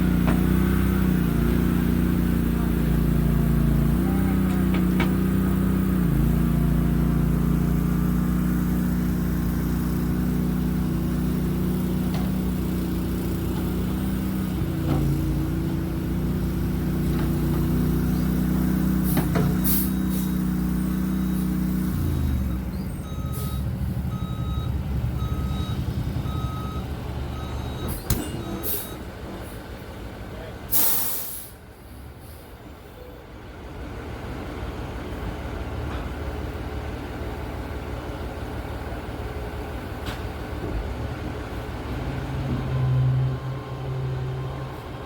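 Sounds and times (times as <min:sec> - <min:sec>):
engine running: 0:00.0 - 0:45.0
short electronic beeps: 0:19.6 - 0:29.0.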